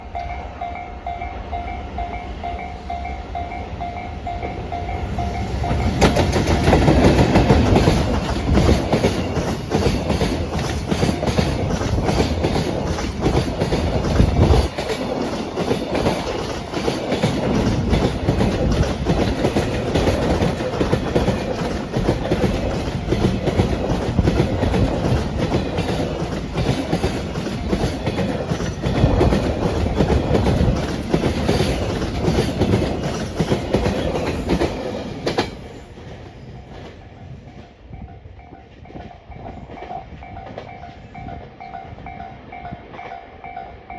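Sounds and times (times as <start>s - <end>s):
electric locomotive passing: 0.0s - 43.9s
level-crossing warning bell: 0.0s - 43.9s
train wheels knocking on rail joints: 4.4s - 43.6s.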